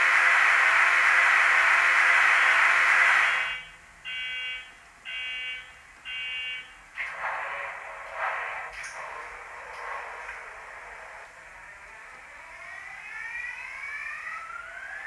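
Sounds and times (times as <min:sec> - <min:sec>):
irregular pulsing engine noise: 0:00.0 - 0:04.0, 0:06.8 - 0:15.0
buzzer-like warning beeps: 0:03.4 - 0:06.8.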